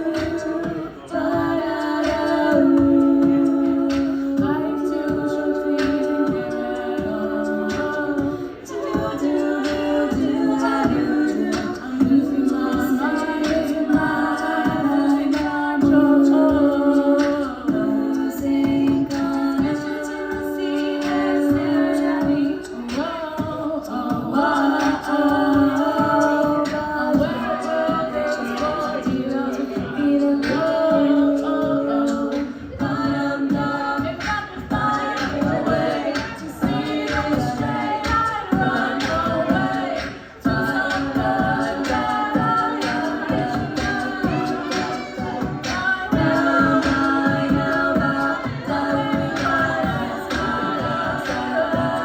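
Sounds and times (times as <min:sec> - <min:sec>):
voices singing in harmony: 0:00.0 - 0:52.0.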